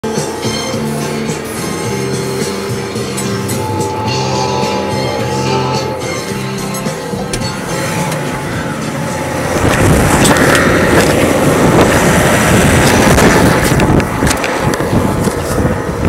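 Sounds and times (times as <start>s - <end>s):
tractor engine rumbling: 0.2s - 16.0s.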